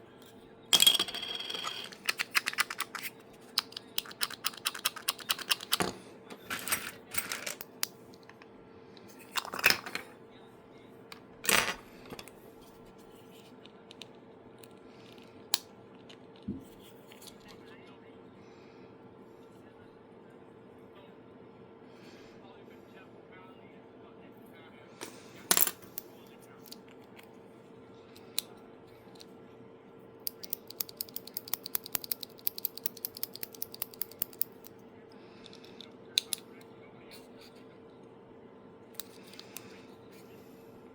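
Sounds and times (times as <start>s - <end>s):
plastic parts clicking and clattering: 0.8s - 8.4s, 30.3s - 34.7s
plastic clicker clicking: 30.3s - 34.7s.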